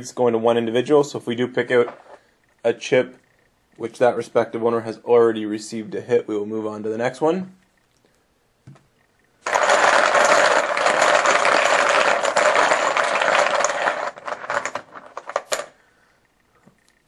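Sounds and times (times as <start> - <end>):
poker chips clattering: 9.5 - 15.8.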